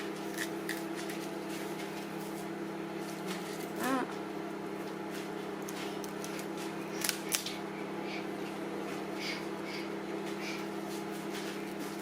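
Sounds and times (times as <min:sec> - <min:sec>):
steady low hum: 0:00.0 - 0:12.0
wavering voice: 0:03.8 - 0:04.2.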